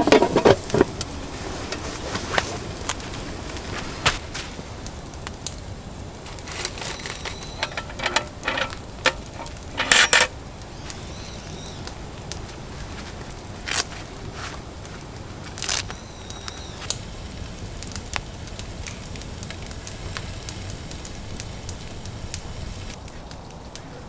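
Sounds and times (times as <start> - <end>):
small metallic clicks and knocks: 0.0 - 1.0, 6.3 - 10.4.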